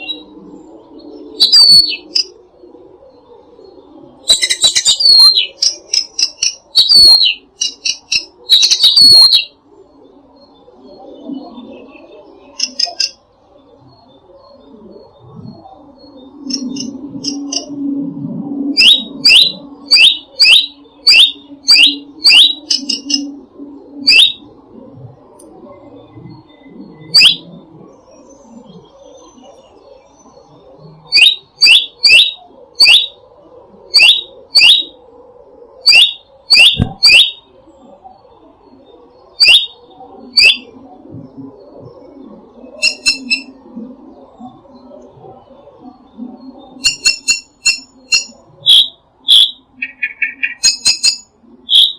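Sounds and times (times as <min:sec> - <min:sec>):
faint high bird twittering: 0:00.0 - 0:02.4, 0:03.0 - 0:17.8, 0:18.7 - 0:24.6, 0:25.8 - 0:33.2, 0:33.9 - 0:35.0, 0:35.8 - 0:37.6, 0:38.2 - 0:43.6, 0:45.9 - 0:51.9
bird chirping sharply: 0:01.4 - 0:02.2, 0:04.3 - 0:09.5, 0:16.5 - 0:17.7, 0:18.8 - 0:23.2, 0:24.1 - 0:24.4, 0:27.1 - 0:27.4, 0:31.1 - 0:33.2, 0:33.9 - 0:34.9, 0:35.9 - 0:37.4, 0:39.4 - 0:39.8, 0:40.4 - 0:40.6, 0:42.8 - 0:43.5, 0:46.8 - 0:51.9.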